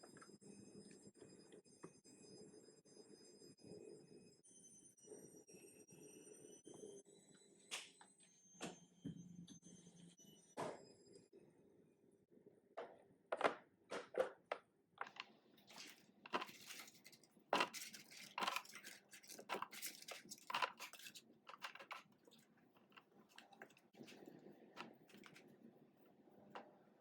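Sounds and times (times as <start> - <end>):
packaging crinkling and rustling: 15.0 - 25.5.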